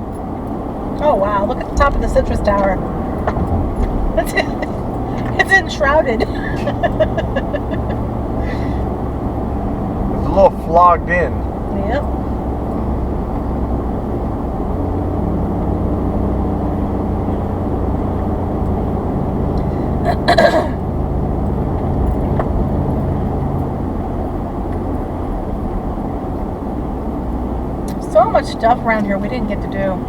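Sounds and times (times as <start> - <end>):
engine drone: 0.0 - 30.0
road noise: 0.0 - 30.0.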